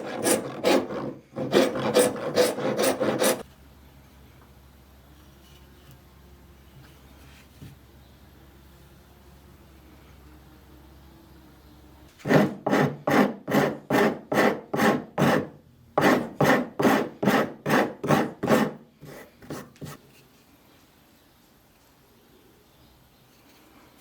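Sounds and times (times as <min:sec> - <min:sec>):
file rasping on a saw: 0:00.0 - 0:03.4, 0:12.2 - 0:19.6.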